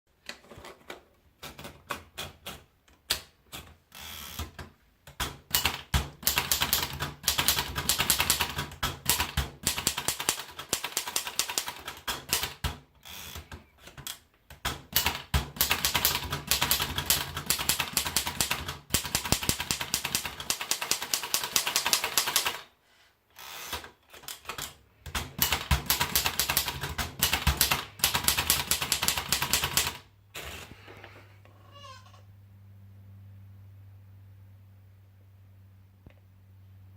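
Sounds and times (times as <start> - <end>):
manual typewriter typing: 5.2 - 22.7, 23.6 - 30.5.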